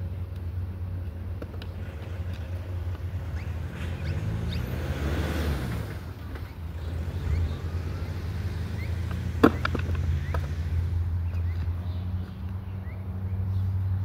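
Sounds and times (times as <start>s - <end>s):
skateboard rolling on concrete: 0.0s - 12.7s
skateboard sharp clack: 9.1s - 10.5s.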